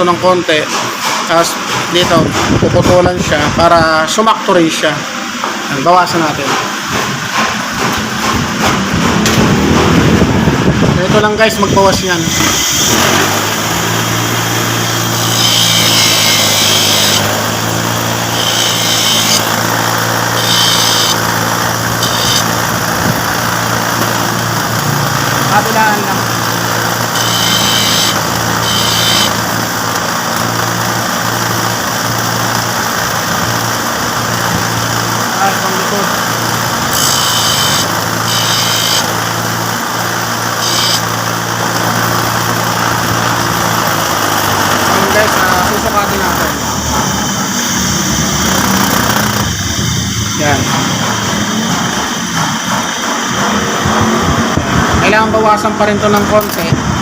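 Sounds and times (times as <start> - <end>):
steady engine hum: 4.8 - 57.0
grinding hiss: 11.3 - 55.0
electric grinder motor running: 12.3 - 50.1
rasping strokes trimming brush: 15.2 - 17.5.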